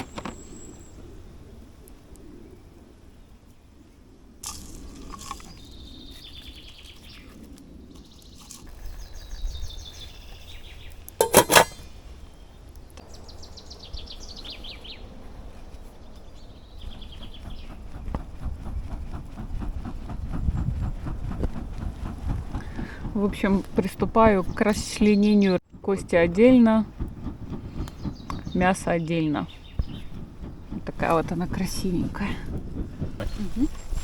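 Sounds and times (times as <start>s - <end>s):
songbirds trilling: 4.9s - 21.1s, 22.0s - 34.0s
sharp knocking clatter: 11.2s - 11.8s.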